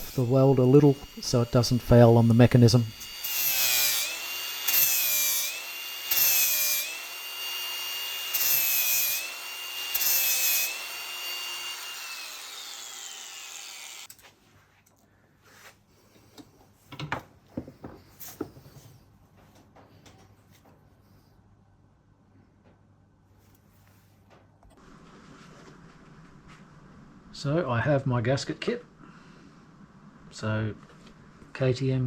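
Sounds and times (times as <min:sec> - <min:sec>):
power grinder grinding metal: 0:00.0 - 0:14.1.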